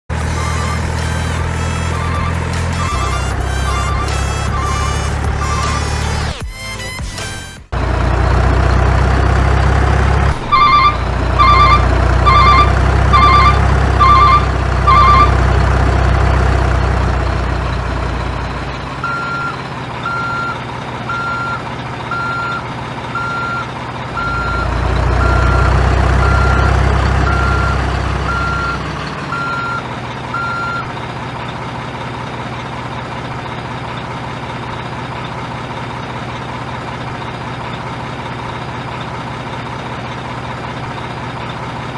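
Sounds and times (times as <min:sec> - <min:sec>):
toy truck engine rumble: 0:00.1 - 0:06.3, 0:07.7 - 0:41.9
reversing alarm beeps: 0:10.6 - 0:15.4, 0:19.0 - 0:22.6, 0:23.2 - 0:29.8, 0:30.4 - 0:30.9.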